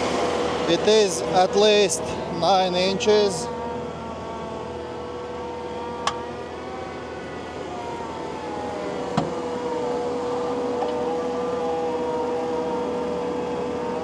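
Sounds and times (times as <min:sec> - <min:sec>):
track loader machine drone: 0:00.0 - 0:14.0.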